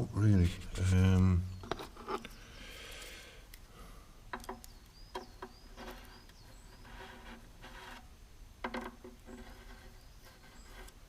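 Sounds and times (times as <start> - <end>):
small bird chirping: 4.4 - 7.3, 9.2 - 11.0.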